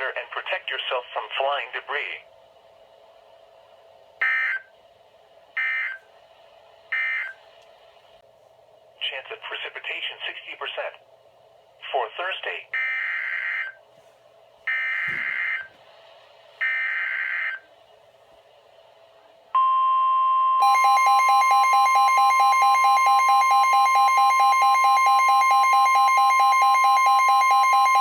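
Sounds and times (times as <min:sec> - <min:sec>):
rapid pulsing alarm beeps: 0:04.2 - 0:04.7, 0:05.6 - 0:06.0, 0:06.9 - 0:07.4, 0:12.8 - 0:13.8, 0:14.7 - 0:15.7, 0:16.6 - 0:17.6, 0:19.6 - 0:28.0
steady warning alarm tone: 0:04.2 - 0:04.7, 0:05.6 - 0:06.0, 0:06.9 - 0:07.4, 0:12.8 - 0:13.8, 0:14.7 - 0:15.8, 0:16.6 - 0:17.6, 0:19.6 - 0:28.0.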